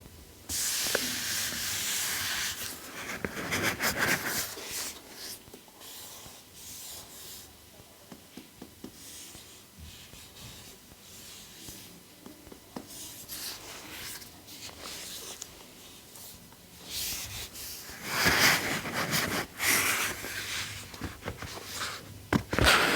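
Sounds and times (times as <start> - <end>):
packaging rustling: 17.9 - 22.9.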